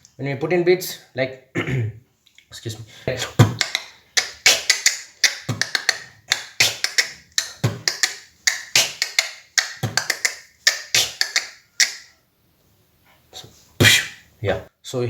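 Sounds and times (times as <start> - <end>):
beatboxing bass kick: 3.2 - 11.5, 13.8 - 14.2
beatboxing mouth clicks: 3.2 - 12.1, 13.8 - 14.3.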